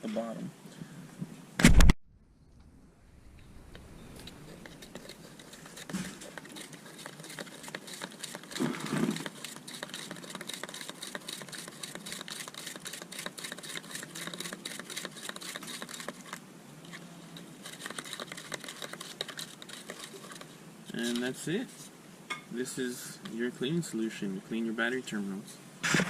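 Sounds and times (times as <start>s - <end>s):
brush scrubbing inside plastic bottle: 3.7s - 21.9s.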